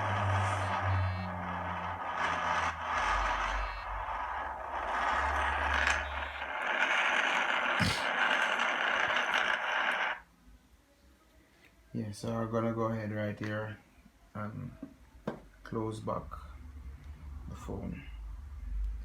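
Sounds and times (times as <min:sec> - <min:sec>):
video soundtrack from phone speaker: 0:00.0 - 0:10.3.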